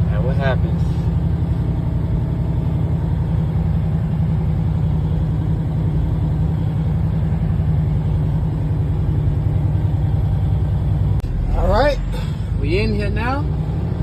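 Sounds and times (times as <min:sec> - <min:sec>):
truck diesel engine running: 0:00.0 - 0:14.0.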